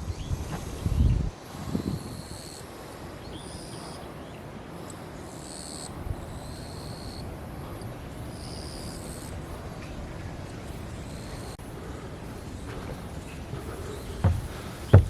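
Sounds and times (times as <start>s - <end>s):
forest background hiss and rumble: 0.0s - 15.0s.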